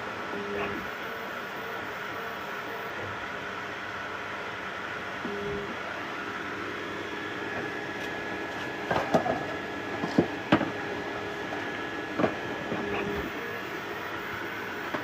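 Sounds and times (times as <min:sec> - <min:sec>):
whir of fans and stepper motors: 0:00.0 - 0:15.0
faint steady tones: 0:00.2 - 0:08.4.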